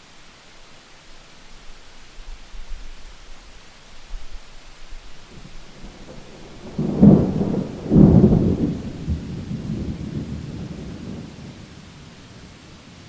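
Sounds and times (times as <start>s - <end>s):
steady rain: 0.0s - 13.0s
thunder rumbling: 5.2s - 13.0s
loud thunder claps: 5.4s - 12.6s.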